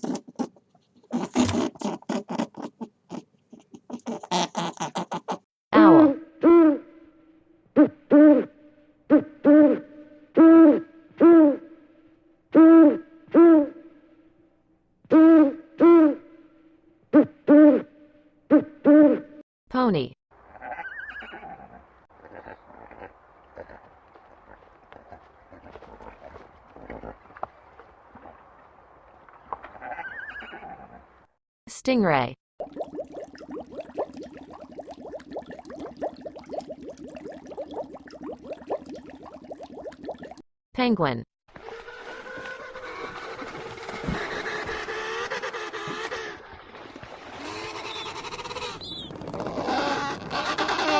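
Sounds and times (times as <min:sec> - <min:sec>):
water bubbling and gurgling: 0:32.6 - 0:40.4.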